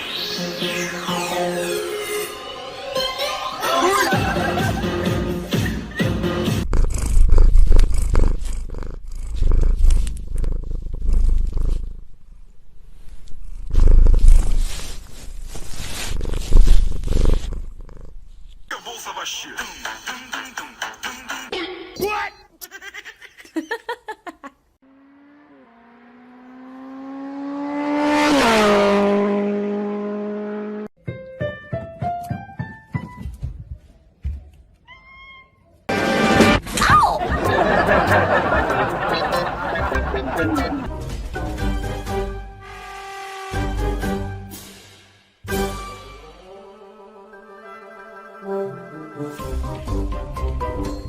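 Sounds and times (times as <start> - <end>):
cat purring loudly: 6.5 - 18.5
motor vehicle passing at speed: 24.8 - 30.9
piano-like notes: 31.0 - 33.2.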